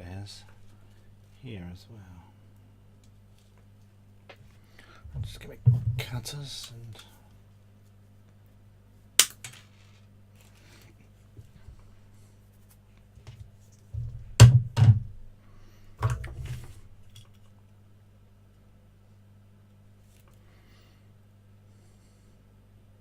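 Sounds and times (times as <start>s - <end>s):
steady low hum: 0.0s - 23.0s
dull thud of handling on bench: 5.1s - 6.2s, 14.0s - 15.2s.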